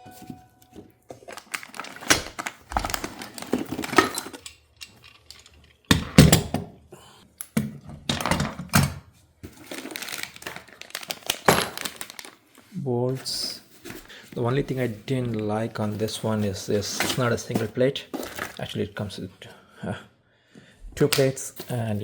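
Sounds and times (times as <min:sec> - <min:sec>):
metal parts clinking and rattling: 0:01.3 - 0:06.5.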